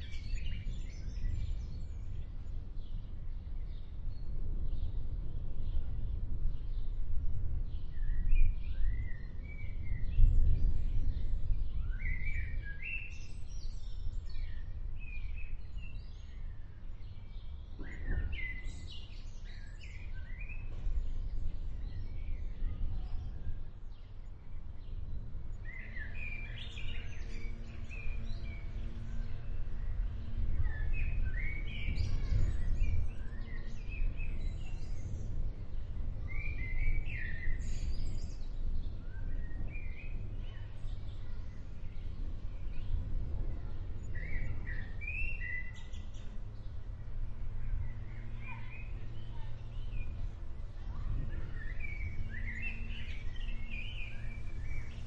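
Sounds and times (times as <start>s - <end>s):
songbirds chirping and trilling: 0.0s - 55.0s.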